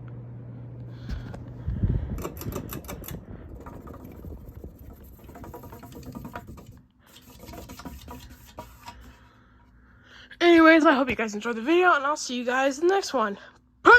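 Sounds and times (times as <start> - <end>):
ceiling fan humming: 0.0 - 13.9
quick clicks and rattles: 2.2 - 6.8.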